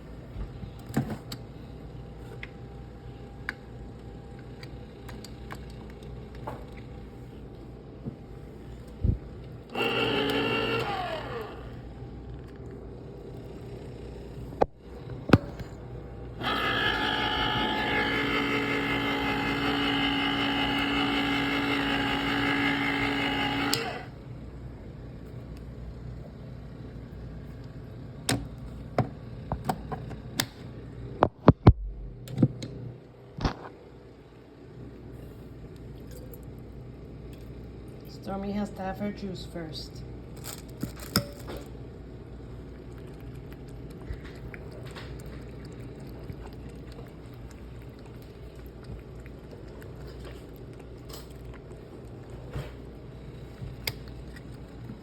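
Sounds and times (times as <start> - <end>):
electric can opener motor hum: 9.7 - 12.2, 16.3 - 24.2.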